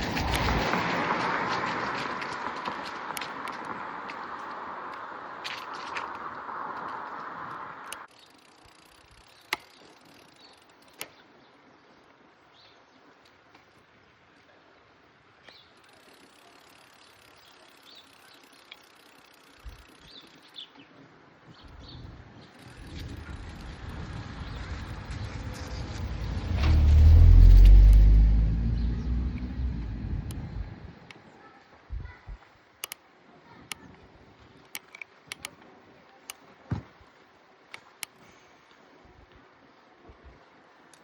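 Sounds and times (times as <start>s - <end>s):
motor vehicle rumble: 0.0s - 11.0s, 21.5s - 32.4s
steady wind hiss: 0.0s - 36.2s
sharp clicks: 6.8s - 11.2s, 15.5s - 20.6s, 22.5s - 31.2s, 32.8s - 33.0s, 34.6s - 35.6s
faint bird chirps: 15.4s - 23.8s.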